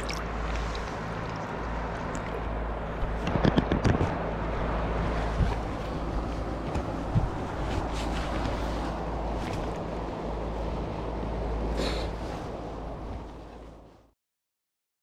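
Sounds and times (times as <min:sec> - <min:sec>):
splashes or knocks: 0:00.0 - 0:02.5
mountain stream rushing: 0:00.0 - 0:06.6
wind rumble on microphone: 0:00.0 - 0:14.1.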